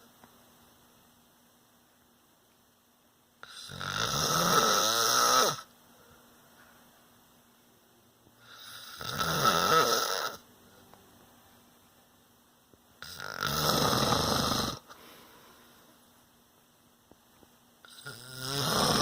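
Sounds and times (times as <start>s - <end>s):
man snoring: 3.4s - 5.7s, 8.4s - 10.4s, 13.0s - 15.0s, 17.9s - 19.0s.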